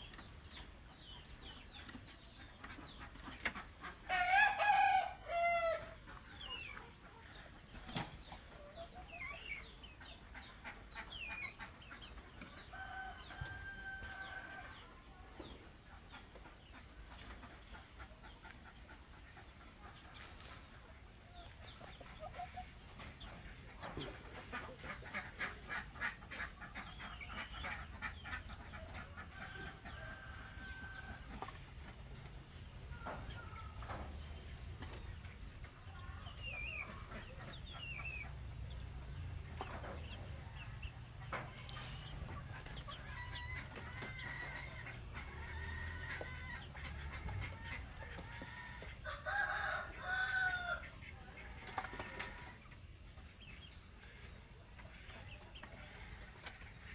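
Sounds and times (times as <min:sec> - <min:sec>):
chickens clucking: 0:00.0 - 0:56.9
rooster crowing: 0:04.1 - 0:05.9, 0:49.1 - 0:50.9.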